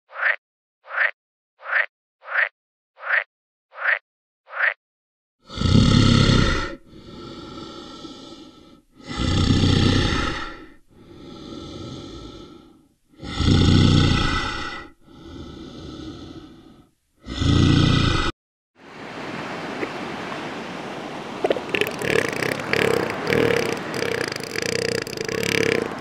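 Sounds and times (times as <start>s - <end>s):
animal breath-like calls: 21.5s - 26.0s.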